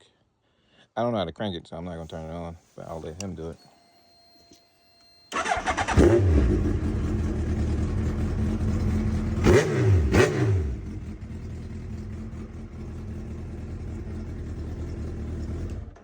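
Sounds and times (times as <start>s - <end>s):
motorcycle engine starting: 5.3s - 16.0s
motorcycle engine idling: 5.4s - 16.0s.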